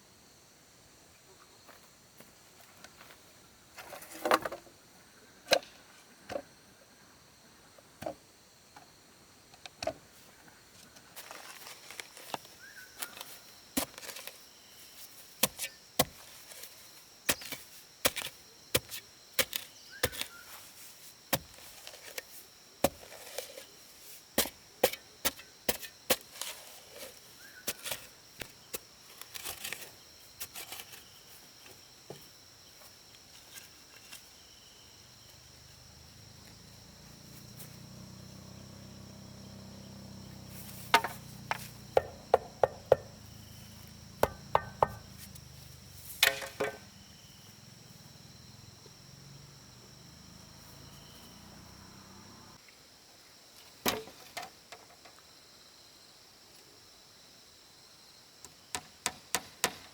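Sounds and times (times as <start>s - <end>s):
insects trilling: 0.0s - 59.9s
tool knocking on wood: 41.0s - 43.1s, 44.2s - 45.1s.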